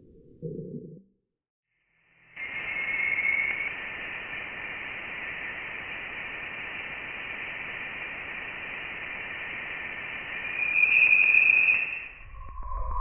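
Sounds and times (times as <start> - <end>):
static-like hiss: 2.1 - 12.2.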